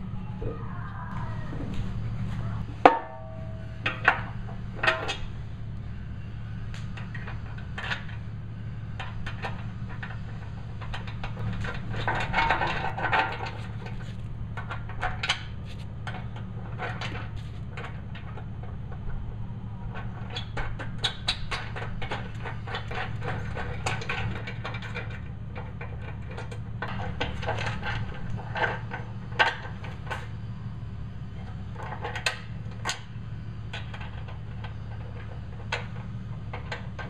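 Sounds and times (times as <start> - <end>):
steady low hum: 0.0 - 37.0
ringing metal clank: 0.1 - 14.0
steel parts and tools clanking: 1.2 - 37.0.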